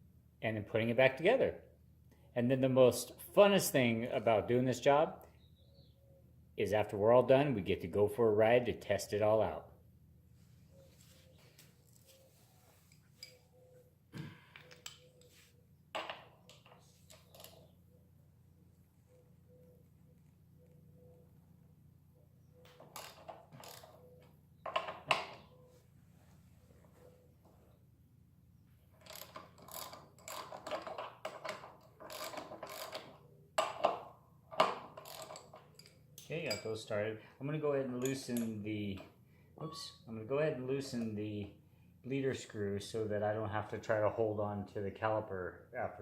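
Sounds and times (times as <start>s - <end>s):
faint steady hum: 0.0s - 46.0s
hand ratchet clicking: 29.0s - 33.8s
metal hand tools clinking: 35.0s - 36.9s.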